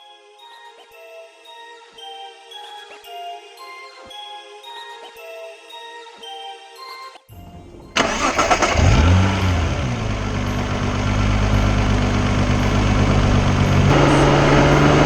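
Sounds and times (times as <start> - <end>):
car engine starting and idling: 7.3 - 15.0.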